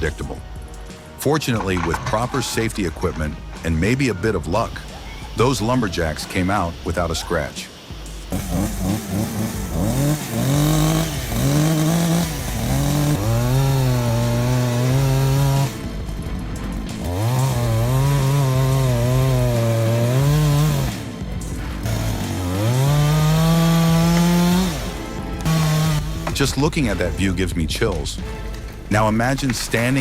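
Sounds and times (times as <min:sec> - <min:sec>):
chainsaw revving: 0:07.9 - 0:27.0.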